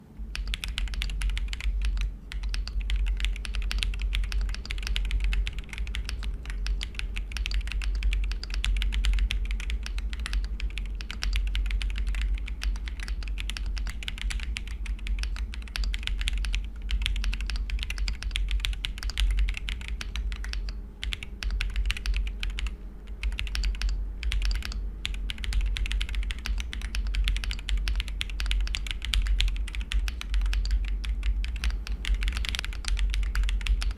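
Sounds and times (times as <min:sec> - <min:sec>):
fast typing on mechanical keyboard: 0:00.3 - 0:33.9.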